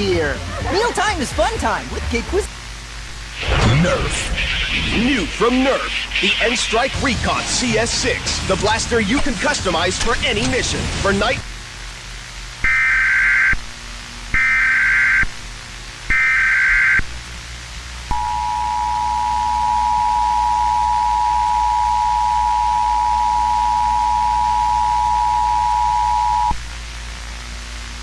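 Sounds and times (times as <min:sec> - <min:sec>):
short data bursts: 0:03.2 - 0:07.9, 0:18.1 - 0:26.6
two-tone attention signal: 0:18.1 - 0:26.6.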